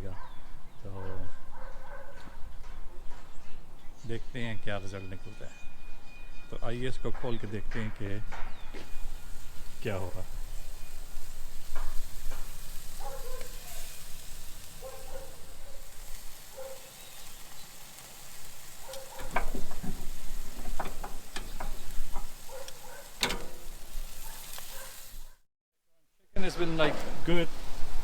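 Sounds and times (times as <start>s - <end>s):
juices dripping onto coals: 8.5s - 25.4s
meat sizzling on a grill: 8.7s - 25.4s, 26.6s - 28.0s
clicks and knocks: 18.9s - 23.9s.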